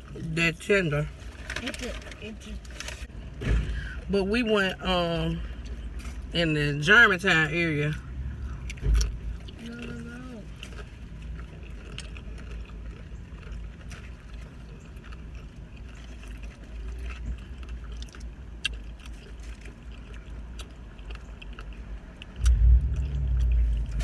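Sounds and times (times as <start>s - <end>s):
chewing sounds: 7.9s - 24.0s
car cabin rumble: 22.4s - 24.0s.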